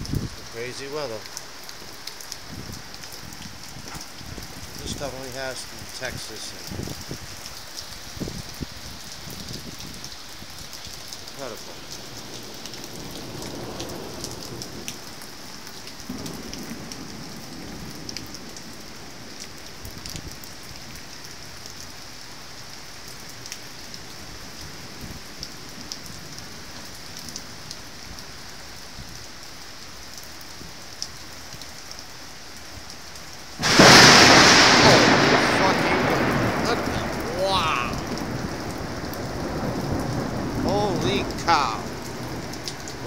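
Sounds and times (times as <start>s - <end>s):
heavy rain: 0.0s - 43.0s
thunder rumble: 33.6s - 43.0s.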